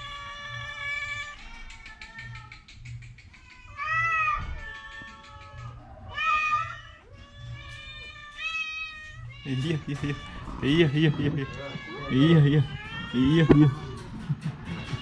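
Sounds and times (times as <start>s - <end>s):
cat meowing: 3.3s - 15.0s.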